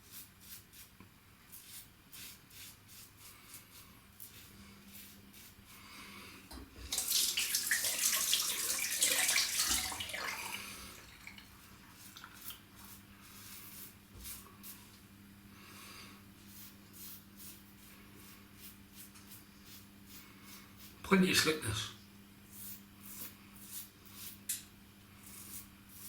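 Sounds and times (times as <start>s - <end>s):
razor scraping skin: 16.5s - 21.0s.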